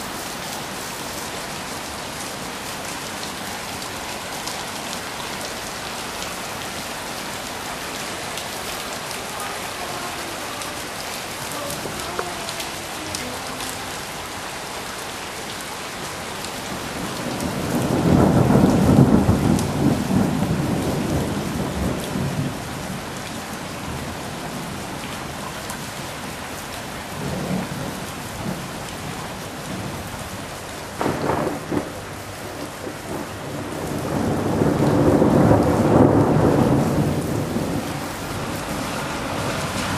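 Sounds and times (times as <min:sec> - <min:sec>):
steady rain: 0:00.0 - 0:39.9
thunder rumbling: 0:16.8 - 0:23.1, 0:27.2 - 0:39.9
sharp thunder crack: 0:17.6 - 0:21.3, 0:31.0 - 0:32.0, 0:32.8 - 0:38.0.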